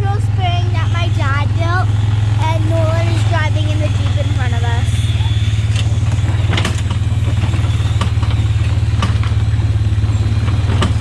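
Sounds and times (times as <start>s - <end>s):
vehicle engine droning: 0.0s - 11.0s
light clicks and rattles: 5.7s - 11.0s.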